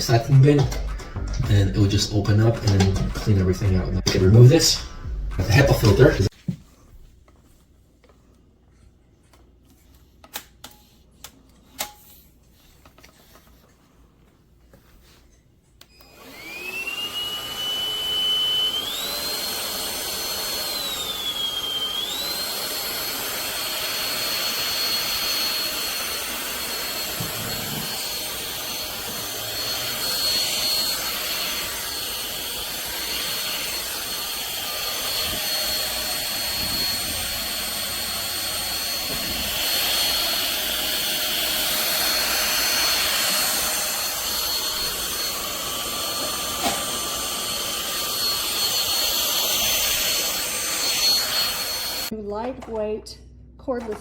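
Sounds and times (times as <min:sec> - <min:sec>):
stick vacuum motor whine: 0:00.0 - 0:06.3, 0:15.8 - 0:52.1.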